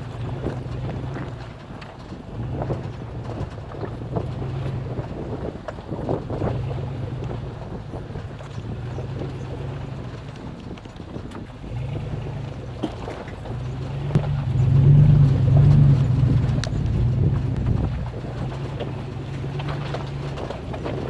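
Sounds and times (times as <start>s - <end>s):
car engine running: 0.0s - 21.0s
suspension knocks and clunks: 0.0s - 21.0s.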